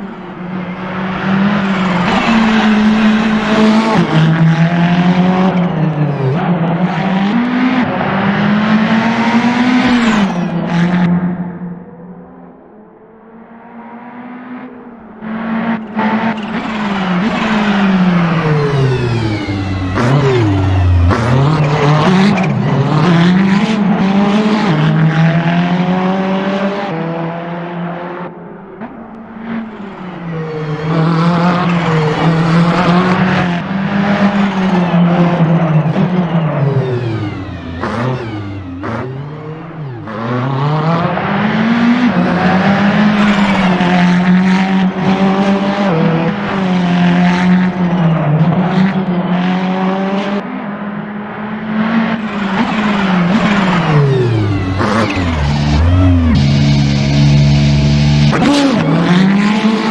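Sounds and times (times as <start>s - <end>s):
race car engine revving: 0.0s - 59.9s.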